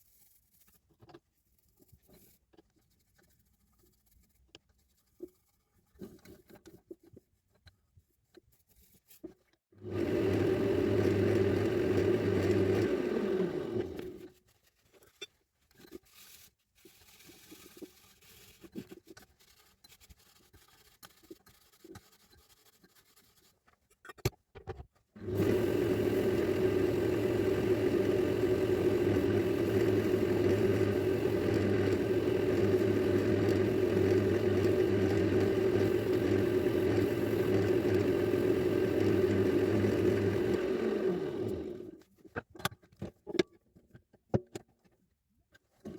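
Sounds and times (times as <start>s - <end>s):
wood lathe motor running: 9.8s - 14.2s, 25.2s - 42.0s.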